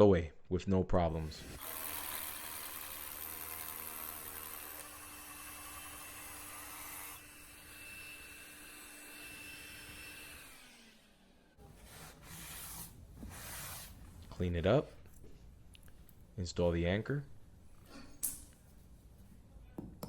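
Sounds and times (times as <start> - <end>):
electric drill boring through stone: 1.3 - 11.3.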